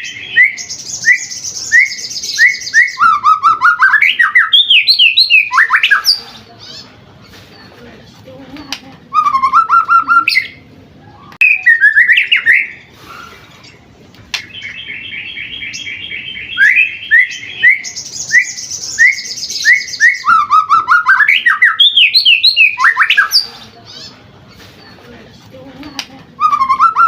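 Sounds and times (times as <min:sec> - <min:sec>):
bird singing whistles and trills: 0:00.0 - 0:06.2, 0:09.1 - 0:13.3, 0:14.4 - 0:24.0, 0:26.4 - 0:27.0.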